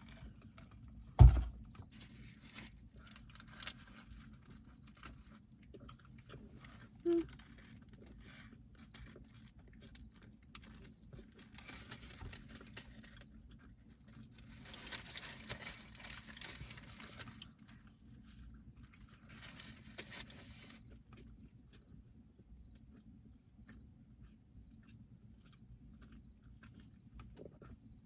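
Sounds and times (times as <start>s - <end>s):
low steady hum: 0.0s - 28.0s
paper wrapper crinkling: 1.8s - 5.4s, 6.6s - 13.2s, 14.2s - 20.8s
chewing: 2.1s - 28.0s.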